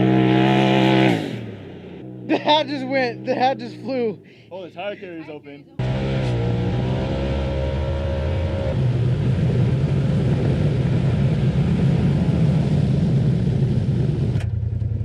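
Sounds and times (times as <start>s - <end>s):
off-road vehicle engine running: 0.0s - 15.0s.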